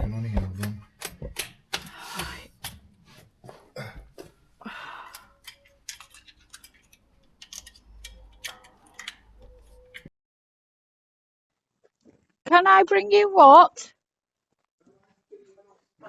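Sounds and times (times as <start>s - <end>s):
hand tools clicking and clinking: 0.6s - 3.3s, 5.0s - 10.1s.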